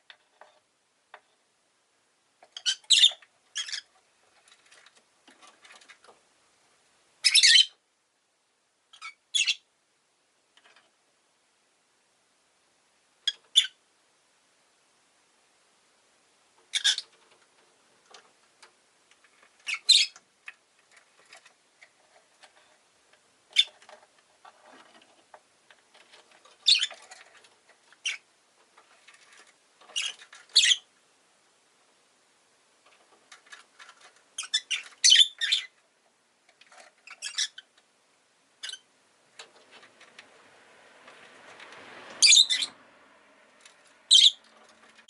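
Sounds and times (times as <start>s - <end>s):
lovebird chirping: 2.6s - 3.9s, 7.2s - 7.8s, 8.9s - 9.7s, 13.2s - 13.8s, 16.7s - 17.1s, 19.6s - 20.2s, 26.6s - 27.0s, 28.0s - 28.3s, 30.0s - 30.9s, 34.4s - 35.8s, 37.0s - 37.7s, 38.6s - 38.9s, 42.2s - 42.8s, 44.0s - 44.5s.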